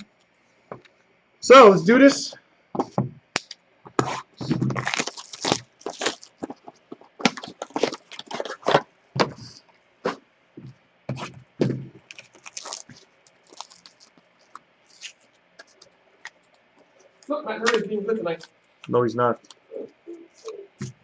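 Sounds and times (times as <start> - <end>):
plastic and cardboard crinkling: 3.9 - 10.2, 11.1 - 21.0.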